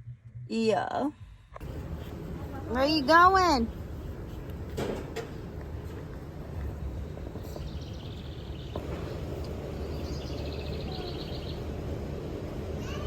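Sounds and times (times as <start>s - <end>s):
rapid high bird chirps: 9.6s - 12.0s.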